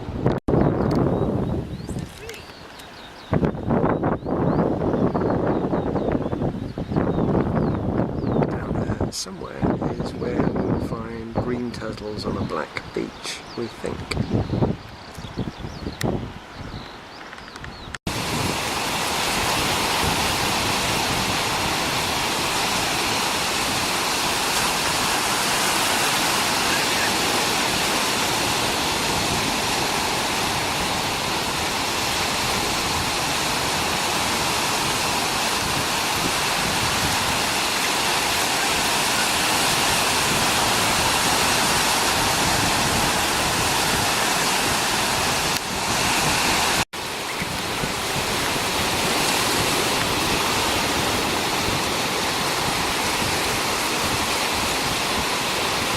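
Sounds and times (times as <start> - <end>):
ocean surf rushing: 8.4 - 14.2, 18.0 - 55.9.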